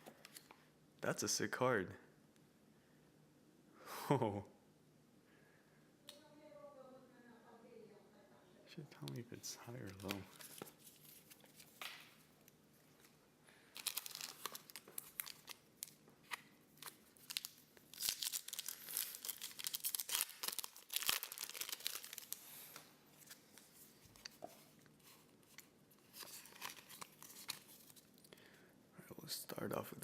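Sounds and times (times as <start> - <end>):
paper and card handling: 9.5 - 12.3, 13.8 - 28.3
foil wrapper tearing and crinkling: 13.8 - 22.8, 26.2 - 28.2.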